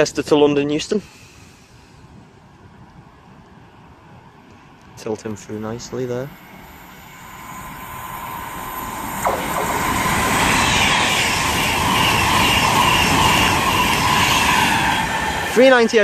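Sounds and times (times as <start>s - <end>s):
train passing at speed: 5.4s - 16.0s.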